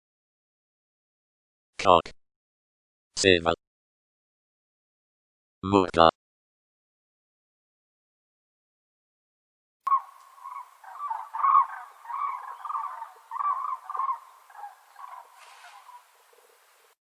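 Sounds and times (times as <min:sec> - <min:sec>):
chicken calling: 0:09.9 - 0:17.0.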